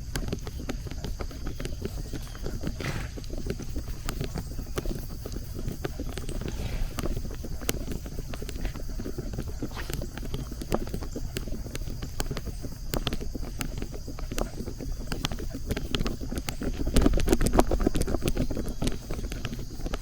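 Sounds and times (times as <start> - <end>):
crunching footsteps: 0.0 - 20.0
scattered clicks: 0.0 - 20.0.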